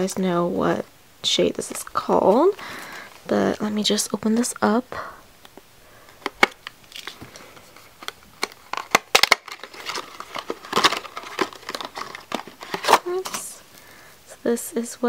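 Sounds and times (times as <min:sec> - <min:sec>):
packaging crinkling and tearing: 0:06.1 - 0:13.6.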